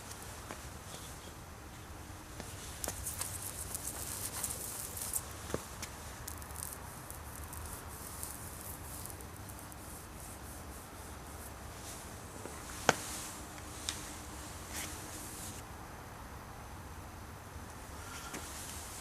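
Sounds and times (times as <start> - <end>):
small ticks: 2.4 - 9.9
faint handling and rubbing: 2.4 - 15.6.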